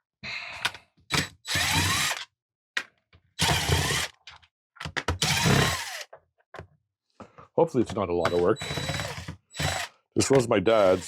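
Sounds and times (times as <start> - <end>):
power drill whirring: 1.1 - 2.2, 3.4 - 4.1, 5.2 - 6.1, 8.2 - 10.0, 10.7 - 11.0.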